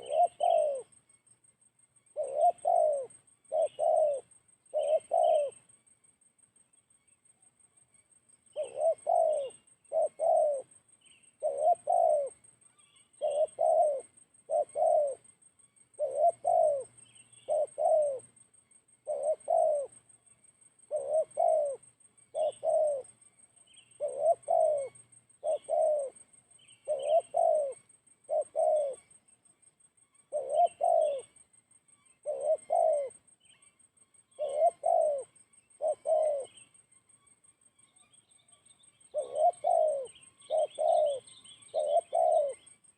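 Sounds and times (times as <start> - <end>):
dove cooing: 0.0 - 1.0, 2.1 - 5.7, 8.4 - 15.3, 15.9 - 18.4, 19.0 - 29.2, 30.3 - 31.4, 32.2 - 33.3, 34.2 - 36.8, 38.5 - 42.8
faint high-pitched hum: 0.0 - 42.9
small birds chirping faintly: 0.0 - 42.9.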